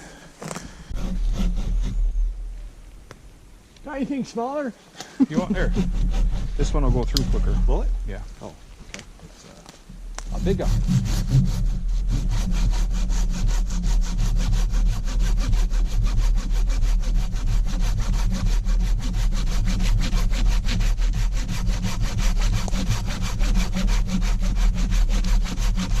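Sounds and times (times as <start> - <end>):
steady low rumble: 0.0 - 4.0, 5.2 - 16.2
hand saw cutting wood: 0.5 - 2.2, 5.3 - 7.9, 10.2 - 26.0.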